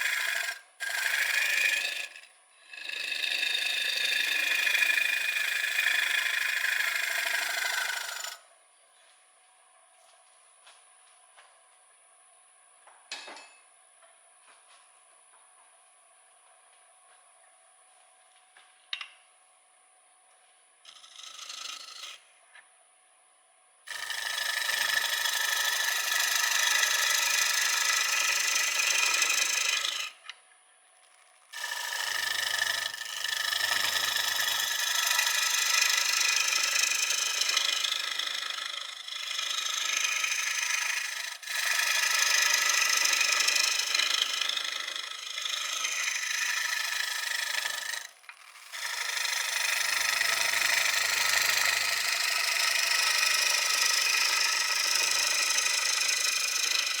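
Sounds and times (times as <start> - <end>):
lathe tool cutting wood: 0.0 - 8.4, 20.9 - 22.2, 23.9 - 30.2, 31.5 - 57.0.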